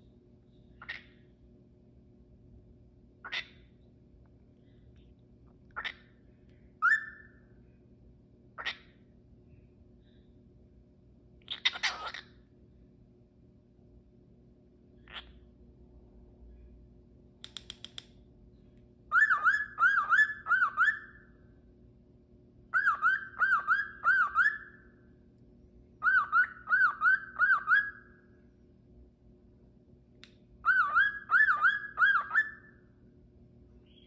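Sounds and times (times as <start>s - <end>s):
cockatiel whistling: 6.8s - 7.3s, 19.1s - 21.2s, 22.8s - 24.8s, 26.0s - 28.1s, 30.6s - 32.7s
quick clicks: 17.4s - 18.1s.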